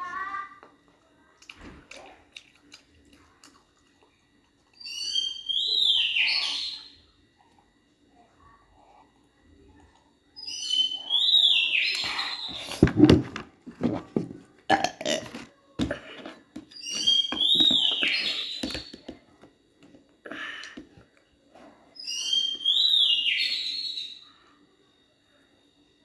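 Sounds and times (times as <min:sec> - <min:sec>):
crunching and chewing chips: 0:00.0 - 0:05.4.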